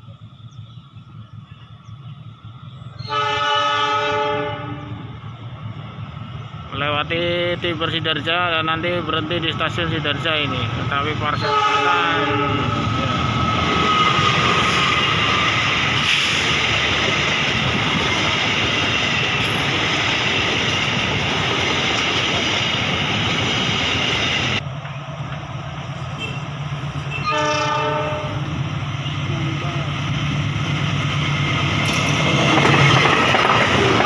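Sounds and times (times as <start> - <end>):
train running past: 0.0 - 34.0
locomotive horn blast: 3.0 - 5.1, 11.3 - 12.8, 26.1 - 26.5, 27.1 - 29.2.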